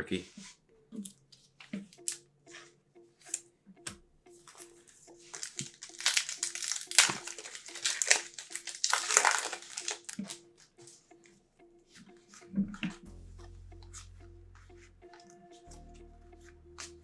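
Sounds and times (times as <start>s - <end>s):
wrapper tearing and crinkling: 2.0s - 2.2s, 5.3s - 10.4s.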